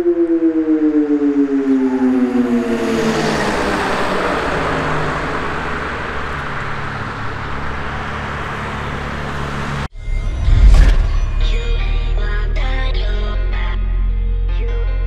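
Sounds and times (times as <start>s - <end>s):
siren falling tone: 0.0s - 7.1s
rushing traffic noise: 0.0s - 12.4s
low hum: 10.0s - 13.5s.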